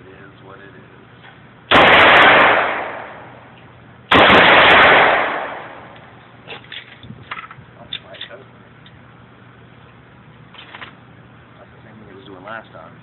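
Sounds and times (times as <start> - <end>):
pistol shots with echo: 1.7 - 3.4, 4.1 - 6.0.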